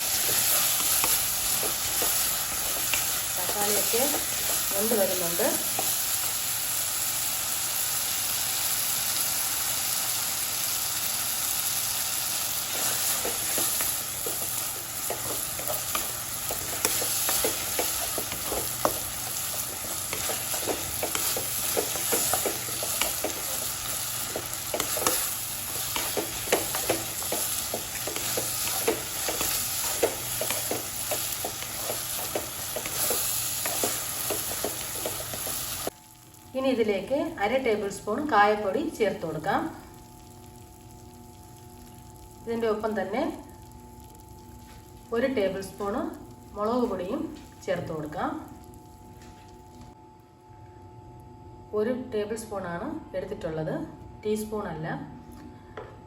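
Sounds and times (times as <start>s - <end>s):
vegetables sizzling in oil: 0.0s - 45.9s
spoon scraping and clicking on pan: 24.3s - 35.8s.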